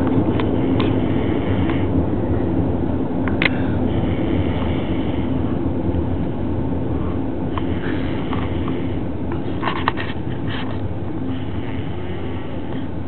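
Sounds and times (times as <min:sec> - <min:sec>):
person snoring: 0:11.3 - 0:12.8.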